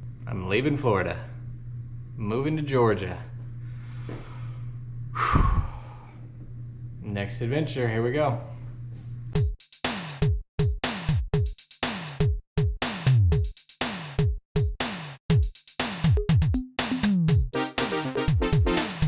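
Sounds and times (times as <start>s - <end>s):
electronic music: 14.8s - 19.0s.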